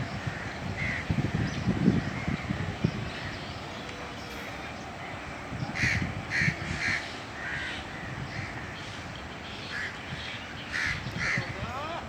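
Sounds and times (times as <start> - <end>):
crows cawing: 5.8 - 8.9, 10.7 - 11.4.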